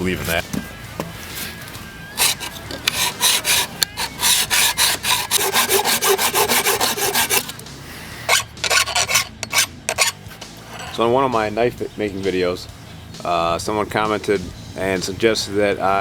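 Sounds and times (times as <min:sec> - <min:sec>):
file rasping on steel: 0:02.2 - 0:07.6, 0:08.2 - 0:11.0.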